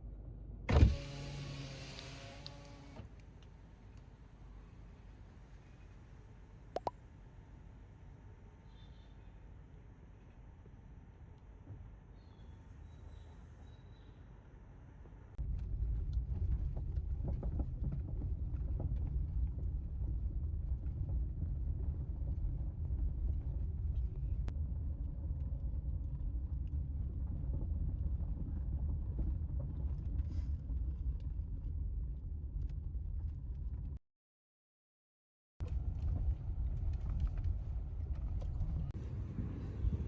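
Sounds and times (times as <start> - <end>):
car cabin road rumble: 0.2 - 3.2, 35.6 - 40.0.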